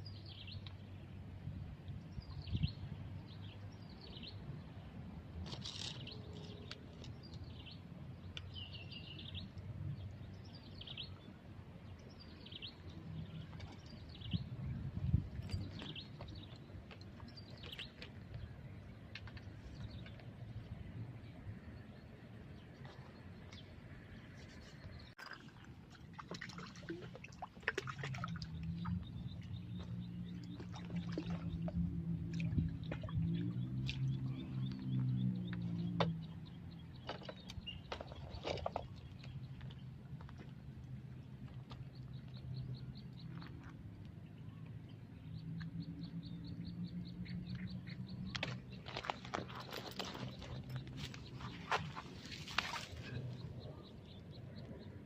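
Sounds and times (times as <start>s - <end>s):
water splashing and dripping: 25.2s - 36.2s, 48.4s - 53.4s
bird chirping: 41.8s - 55.0s.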